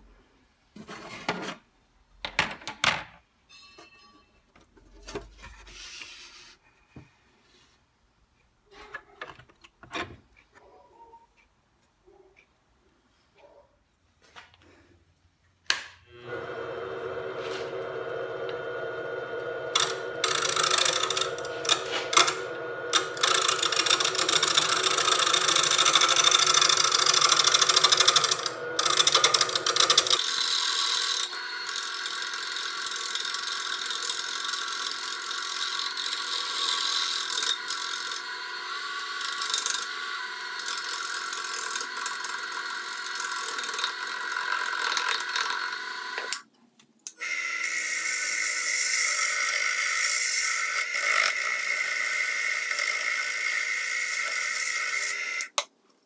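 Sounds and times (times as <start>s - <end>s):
lathe motor hum: 16.1s - 46.4s, 47.6s - 55.5s
tool scraping spinning wood: 16.2s - 46.4s.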